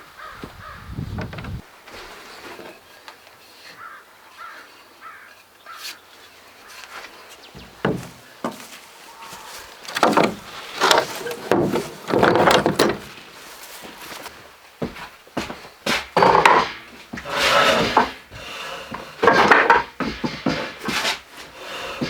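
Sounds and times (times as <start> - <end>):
crows cawing: 0.2 - 0.9, 3.7 - 6.0, 9.0 - 9.8
wooden knocks and handling noises: 0.3 - 2.8, 7.0 - 22.0.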